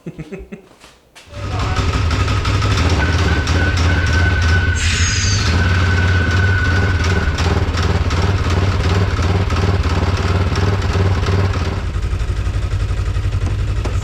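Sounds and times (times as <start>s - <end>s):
thin whine: 1.3s - 10.7s
vehicle engine running: 1.3s - 14.0s.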